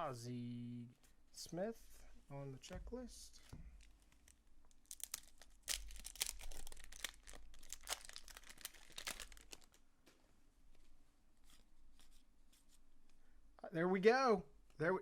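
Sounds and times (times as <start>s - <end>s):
card pack crinkling: 3.8s - 9.8s.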